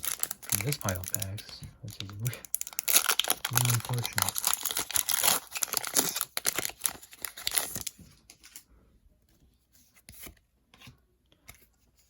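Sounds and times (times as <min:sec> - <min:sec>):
foil wrapper crinkling and tearing: 0:00.0 - 0:08.0
cards rustling: 0:00.0 - 0:08.7.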